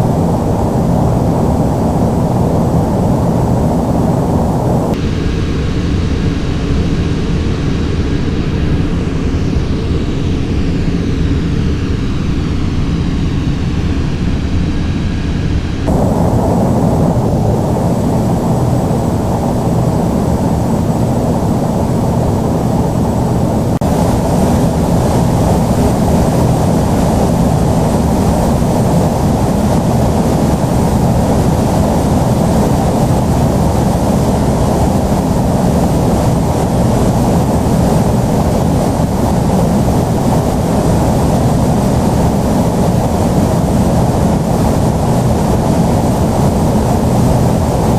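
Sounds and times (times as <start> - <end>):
jet engine hiss: 0.0 - 12.3, 15.9 - 47.9
jet engines rumbling: 0.0 - 47.9.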